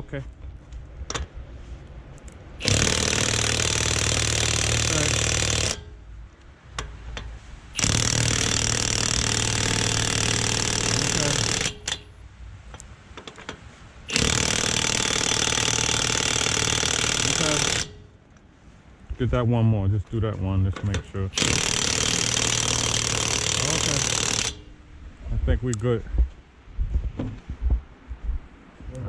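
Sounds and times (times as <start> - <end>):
impact wrench hammering: 2.6 - 6.0, 6.8 - 12.1, 14.1 - 18.1, 20.9 - 24.7.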